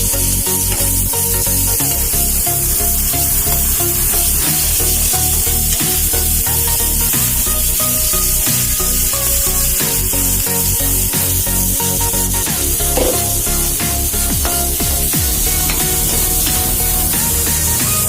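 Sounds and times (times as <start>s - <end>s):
onion sizzling in hot oil: 0.0s - 18.0s.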